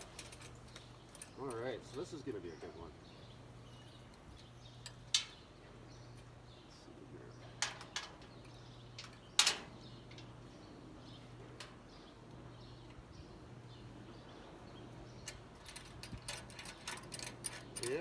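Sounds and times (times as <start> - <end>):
tools and hardware clicking: 15.3 - 18.0.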